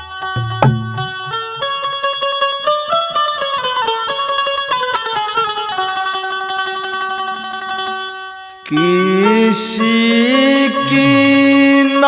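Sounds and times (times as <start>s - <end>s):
plucked string instrument melody: 0.4s - 2.0s.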